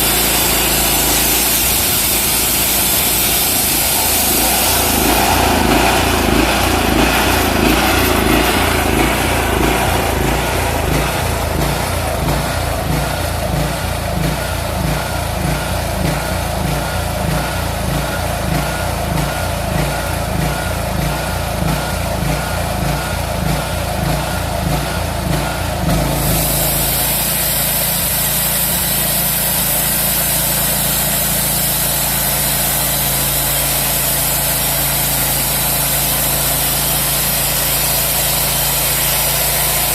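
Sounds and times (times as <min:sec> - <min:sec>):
high hiss: 0:00.0 - 0:12.8, 0:26.2 - 0:39.9
small engine running: 0:00.0 - 0:39.9.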